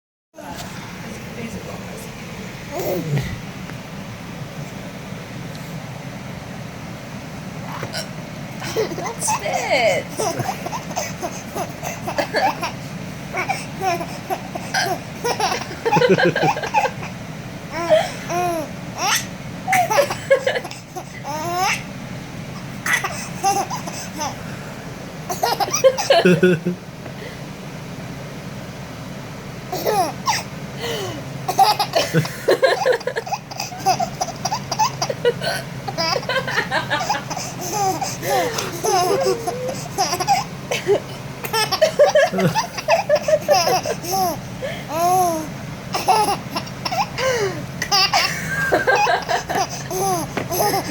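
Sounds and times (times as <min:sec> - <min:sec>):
baby laughing: 0:08.6 - 0:21.9, 0:22.6 - 0:24.4, 0:25.3 - 0:26.8, 0:29.7 - 0:50.9
baby squealing: 0:36.9 - 0:40.5.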